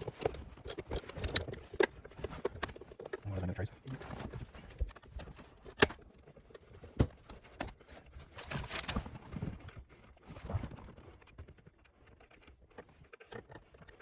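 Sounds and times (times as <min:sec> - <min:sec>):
loose parts rattling clatter: 0:00.0 - 0:05.8.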